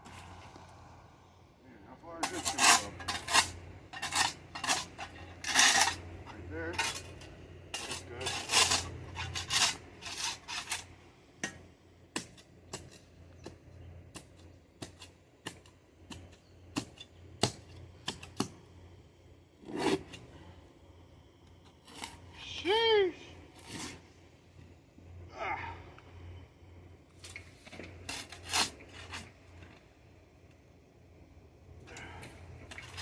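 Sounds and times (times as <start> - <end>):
shovel scraping on concrete: 2.2 - 11.0, 12.2 - 13.2, 19.6 - 20.4, 21.7 - 22.6, 23.4 - 24.1, 27.2 - 29.8, 32.6 - 33.0.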